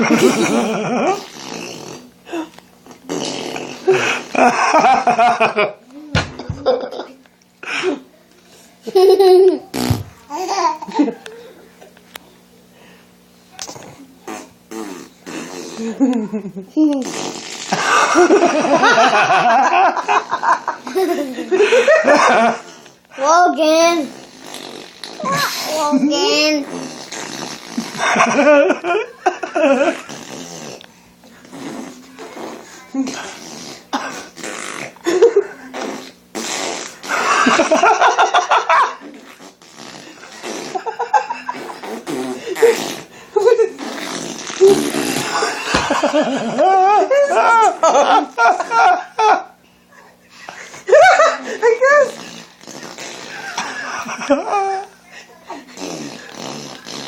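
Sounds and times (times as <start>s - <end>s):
baby blowing raspberries: 0.2s - 4.4s, 9.7s - 10.1s, 13.6s - 16.1s, 17.0s - 17.9s, 20.8s - 21.7s, 24.0s - 25.9s, 26.5s - 28.0s, 30.0s - 35.0s, 35.6s - 37.4s, 39.0s - 40.9s, 41.5s - 43.2s, 43.8s - 46.0s, 52.0s - 53.8s, 55.7s - 57.0s
high-pitched chuckles: 15.8s - 22.7s.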